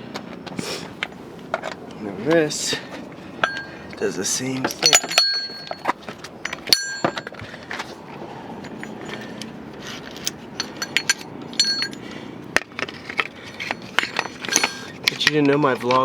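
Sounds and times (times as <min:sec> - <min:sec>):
metal tools clinking: 0:00.2 - 0:16.0.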